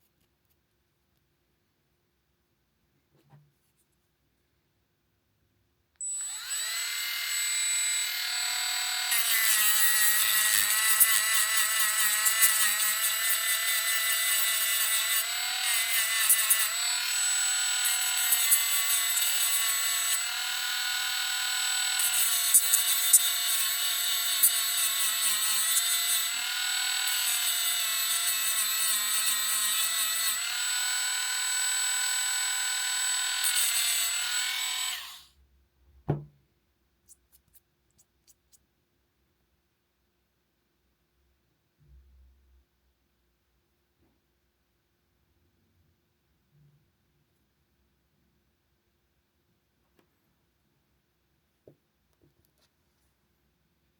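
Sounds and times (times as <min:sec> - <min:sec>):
electric grinder motor whine: 0:06.0 - 0:12.2, 0:12.8 - 0:35.2.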